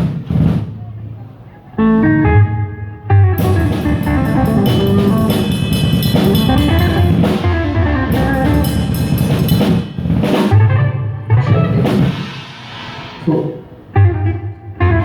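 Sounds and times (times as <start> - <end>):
electric guitar: 1.8 - 15.0
drum and cymbal hits: 3.4 - 10.8, 11.4 - 13.9.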